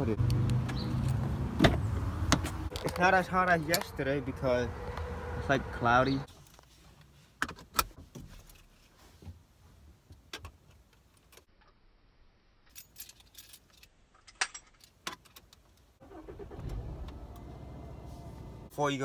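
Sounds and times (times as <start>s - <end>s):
car engine starting and idling: 16.0s - 19.0s.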